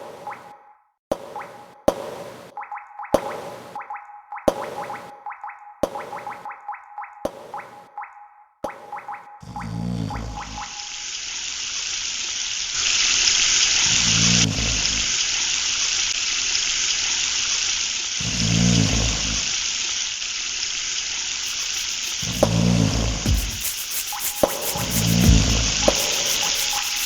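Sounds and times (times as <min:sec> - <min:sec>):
steady rushing noise: 0:23.3 - 0:27.0
deep low throb: 0:25.0 - 0:26.0.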